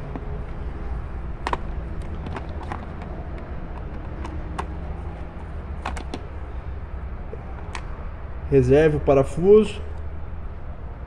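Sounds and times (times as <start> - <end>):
low background rumble: 0.0 - 11.0
screwdriver clicks and ticks: 1.5 - 4.8.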